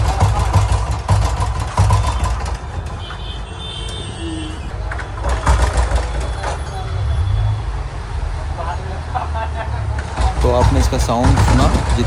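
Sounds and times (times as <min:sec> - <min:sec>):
motorcycle engine failing to start: 0:00.0 - 0:03.0, 0:05.0 - 0:06.8, 0:10.2 - 0:12.0.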